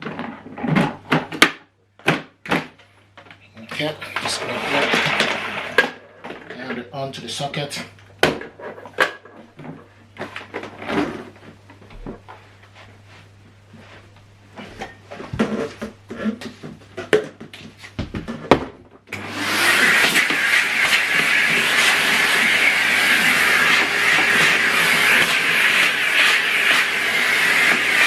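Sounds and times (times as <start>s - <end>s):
vacuum cleaner running: 3.6s - 6.5s, 17.8s - 28.0s.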